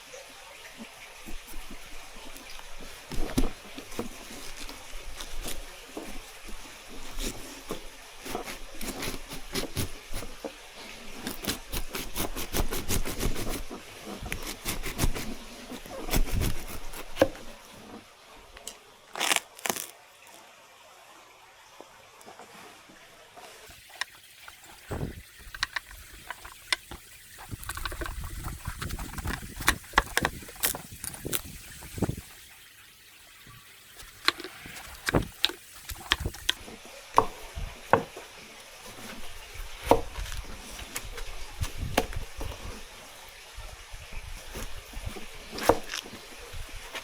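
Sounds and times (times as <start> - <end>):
water pouring and trickling: 0.0 - 47.0
sharp clicks and knocks: 23.9 - 31.4.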